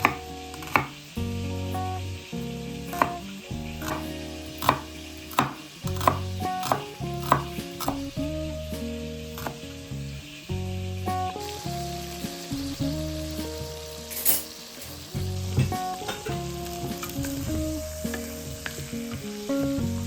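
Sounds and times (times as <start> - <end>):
background music with bass line: 0.0 - 20.0
food frying in a pan: 0.0 - 20.0.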